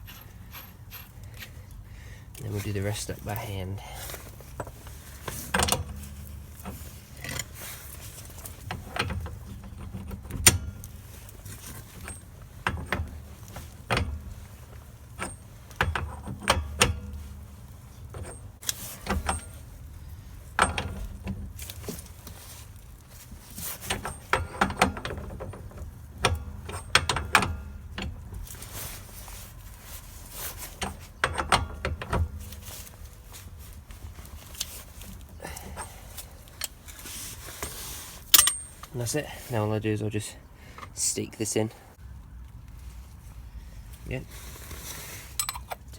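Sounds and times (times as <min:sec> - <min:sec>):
metal hand tools clinking: 0:37.6 - 0:39.0, 0:45.3 - 0:45.9.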